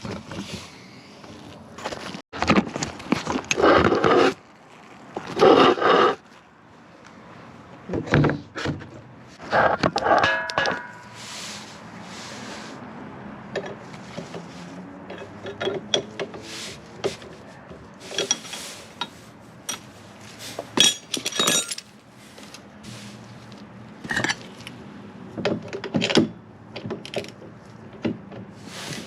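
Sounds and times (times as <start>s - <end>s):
metal tools clanking and scraping: 9.6s - 11.3s, 18.0s - 20.0s, 20.6s - 22.0s
metallic ring: 10.2s - 11.3s, 20.8s - 21.9s.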